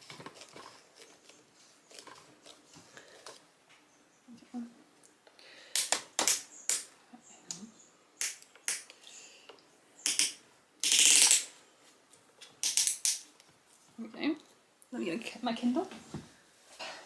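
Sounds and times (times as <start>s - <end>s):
small hard objects clicking: 5.8s - 6.9s, 8.2s - 9.0s, 10.0s - 11.5s, 12.6s - 13.3s.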